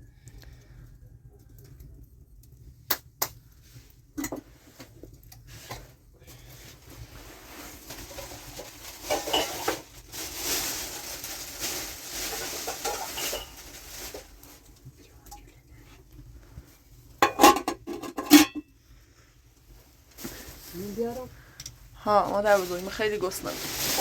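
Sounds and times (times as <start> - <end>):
dishes clattering and scraping: 4.2 - 4.5, 8.0 - 9.9, 12.3 - 14.2, 17.2 - 18.7
dishes clinking: 17.2 - 18.6.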